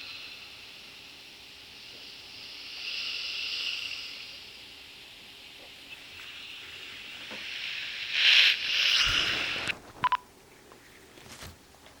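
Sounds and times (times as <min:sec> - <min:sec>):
short electronic beeps: 0:10.0 - 0:10.2.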